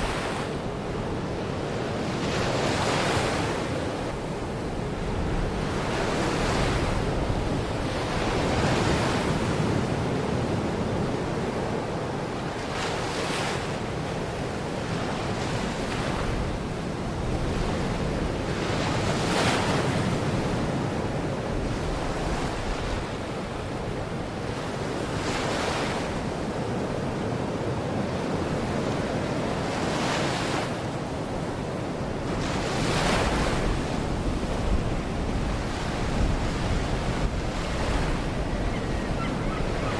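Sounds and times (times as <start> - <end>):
wind buffeting microphone: 33.2 - 39.9.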